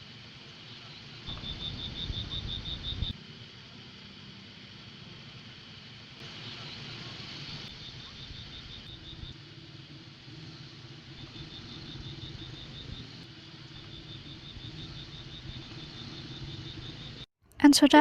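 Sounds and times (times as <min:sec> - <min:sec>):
high-pitched insect chirps: 0:01.3 - 0:03.2, 0:10.4 - 0:17.2
low rumble: 0:01.3 - 0:03.2.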